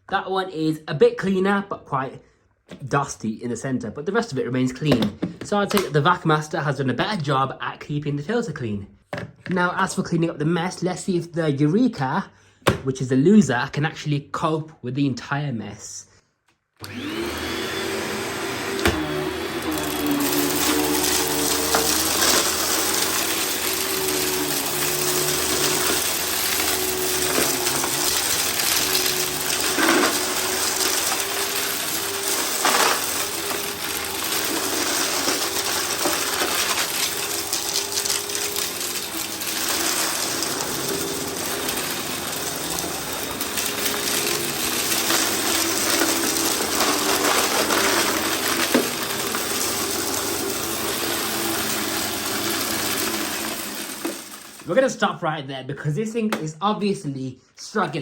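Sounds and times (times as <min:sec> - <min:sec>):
upright vacuum running: 0:16.8 - 0:54.7
debris rattling through vacuum: 0:16.8 - 0:54.8.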